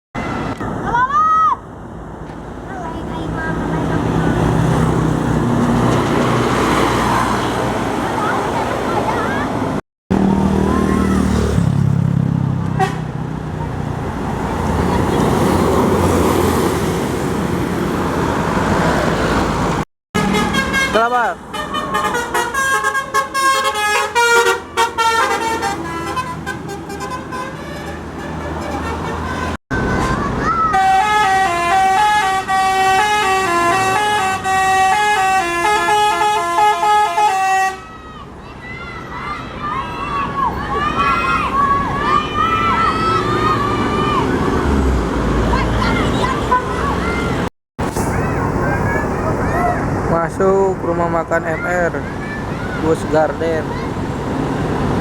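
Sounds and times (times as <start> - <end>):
bus engine humming: 0.2 - 55.0
passing road traffic: 0.2 - 55.0
bus multi-tone horn tune: 12.8 - 13.2, 20.2 - 38.0, 46.0 - 47.0.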